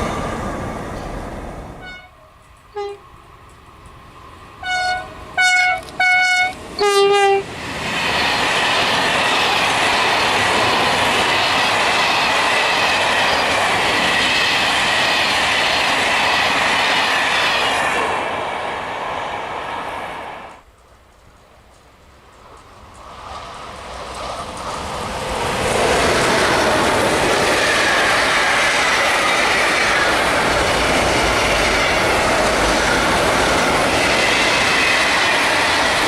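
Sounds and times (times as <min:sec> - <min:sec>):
freight train rolling past: 0:00.0 - 0:36.0
locomotive horn blasts: 0:01.8 - 0:03.0, 0:04.6 - 0:07.5
train wheel clatter: 0:05.6 - 0:18.2, 0:20.6 - 0:36.0.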